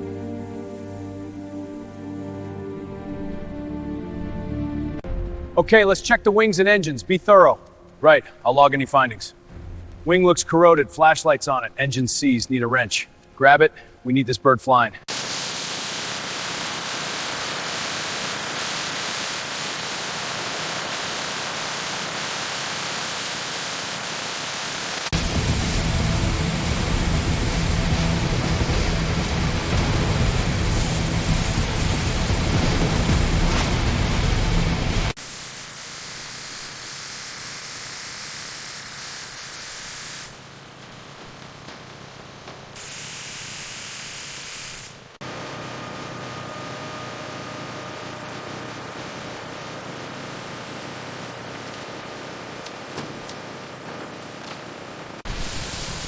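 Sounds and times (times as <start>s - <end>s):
strong low hum: 9.3s - 11.0s, 25.1s - 35.2s
steady hiss: 15.1s - 45.2s, 55.2s - 56.0s
loud rumbling rush: 25.1s - 35.2s.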